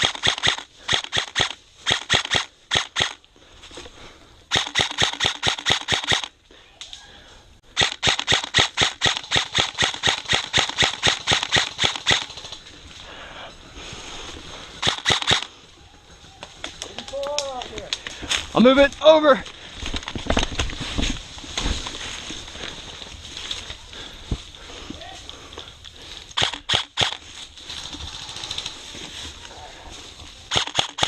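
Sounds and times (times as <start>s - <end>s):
airsoft rifle automatic fire: 0.0s - 3.2s, 4.5s - 6.3s, 7.8s - 12.5s, 14.8s - 15.5s, 26.4s - 27.2s, 30.5s - 31.0s.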